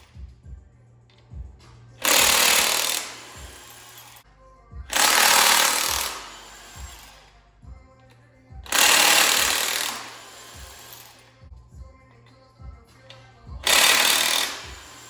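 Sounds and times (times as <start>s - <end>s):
background music with soft beat: 0.0s - 15.0s
impact wrench rattling: 2.0s - 4.2s, 4.9s - 7.3s, 8.7s - 11.2s, 13.6s - 15.0s.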